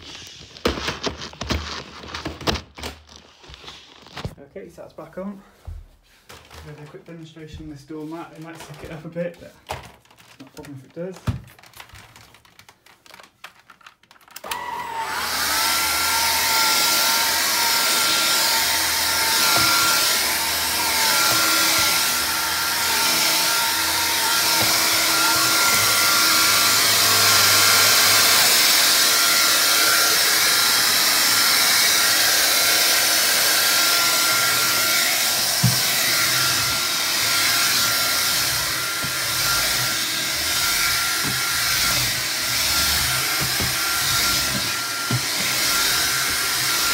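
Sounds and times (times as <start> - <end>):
vacuum cleaner running: 14.4 - 46.9.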